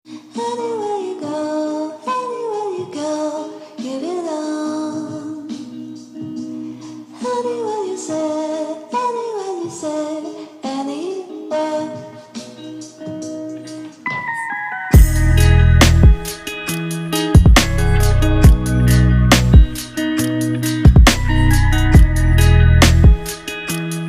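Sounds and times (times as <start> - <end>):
woman singing: 0.1 - 14.6
instrumental accompaniment: 11.1 - 24.0.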